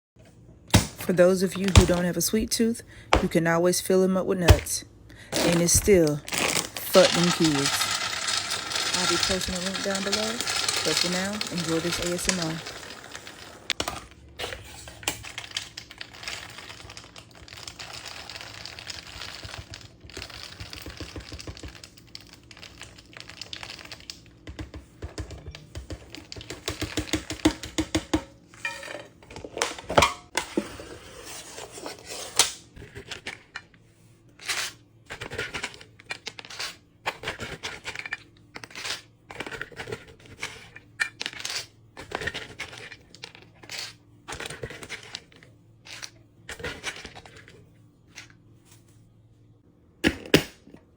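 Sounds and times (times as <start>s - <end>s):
hard pieces rattling in dispenser: 5.3s - 13.8s.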